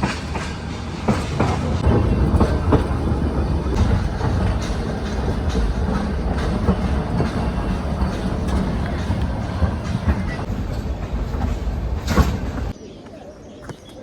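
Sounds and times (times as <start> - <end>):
train coaches rumbling: 0.0 - 12.8
wheels clicking on rails: 0.0 - 12.8.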